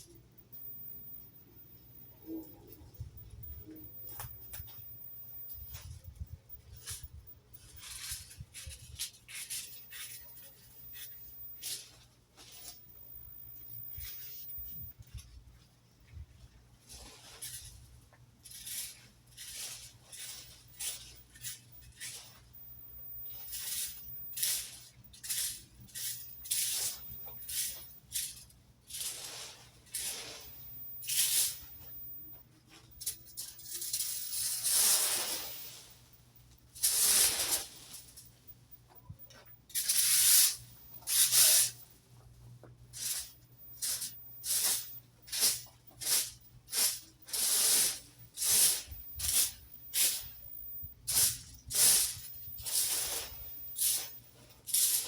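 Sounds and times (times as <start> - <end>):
rake sweeping through leaves: 6.6 - 12.8, 18.5 - 22.5, 23.4 - 31.9, 32.8 - 36.1, 36.8 - 38.2, 39.8 - 41.8, 43.0 - 55.0.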